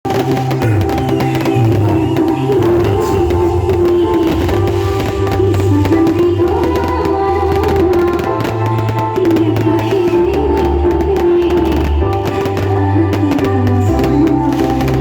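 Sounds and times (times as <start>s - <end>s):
sustained melody: 0.0s - 15.0s
heavy bass line: 0.4s - 8.7s.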